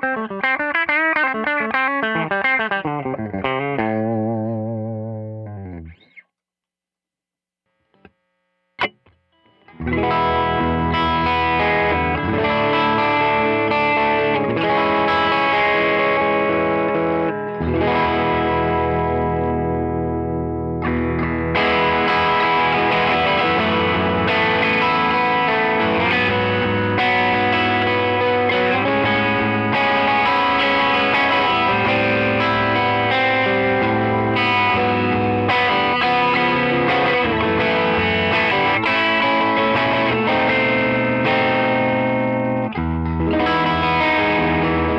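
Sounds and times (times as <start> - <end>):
overdriven electric guitar chords: 0.0 - 6.2, 8.8 - 44.9.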